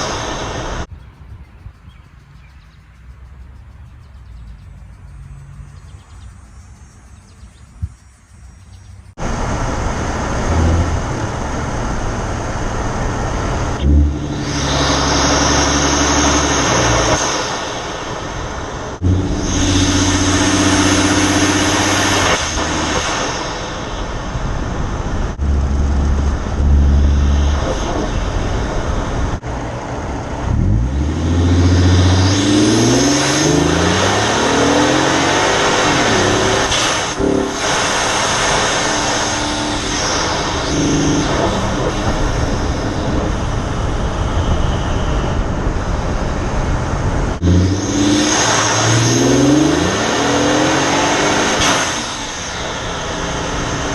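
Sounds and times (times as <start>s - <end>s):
truck engine accelerating: 0.0s - 0.9s, 8.4s - 53.9s
turbos spooling and whistling: 0.0s - 2.2s, 5.6s - 29.4s, 30.6s - 53.9s.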